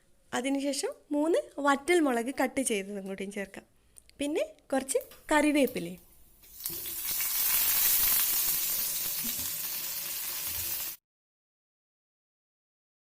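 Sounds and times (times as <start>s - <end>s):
hot oil sizzling: 6.4s - 11.0s.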